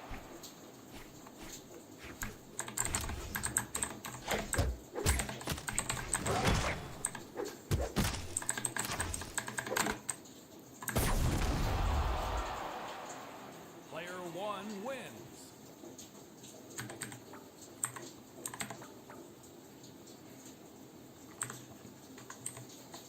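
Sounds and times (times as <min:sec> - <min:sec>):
clicky mechanical keyboard typing: 0:02.1 - 0:06.4, 0:08.2 - 0:10.2, 0:16.8 - 0:17.2, 0:17.8 - 0:18.9, 0:21.3 - 0:23.0.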